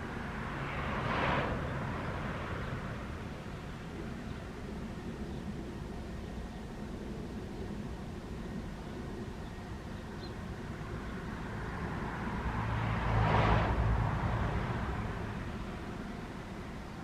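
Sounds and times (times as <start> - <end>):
car passing by: 0.0 - 3.8, 11.0 - 16.5.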